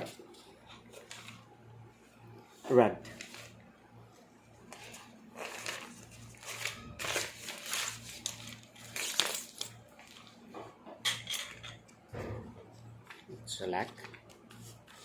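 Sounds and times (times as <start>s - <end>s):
packaging rustling and crinkling: 0.0s - 1.6s, 3.0s - 3.6s, 4.6s - 10.5s, 12.8s - 15.0s.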